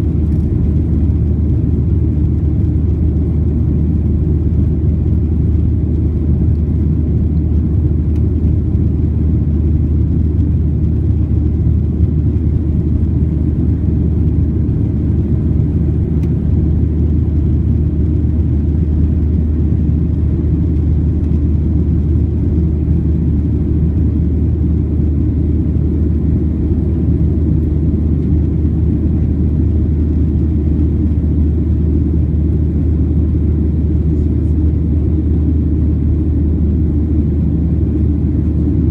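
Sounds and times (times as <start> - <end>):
jet airliner low rumble: 0.0 - 38.9.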